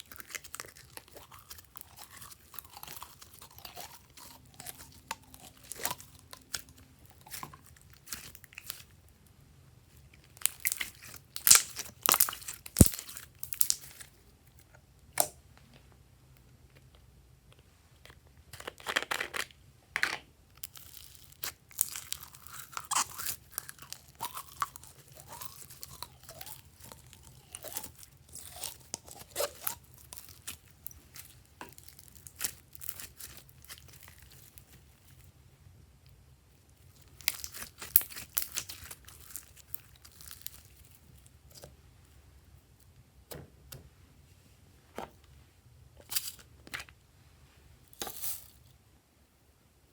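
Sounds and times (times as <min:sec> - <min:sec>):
slime crackling and squelching: 0:00.0 - 0:09.1, 0:09.9 - 0:14.2, 0:20.6 - 0:35.2, 0:36.8 - 0:41.7.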